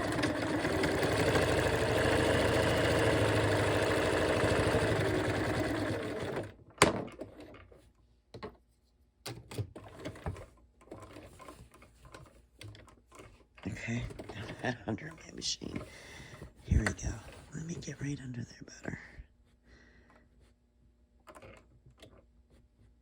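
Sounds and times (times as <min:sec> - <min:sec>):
sewing machine running: 0:00.0 - 0:06.6.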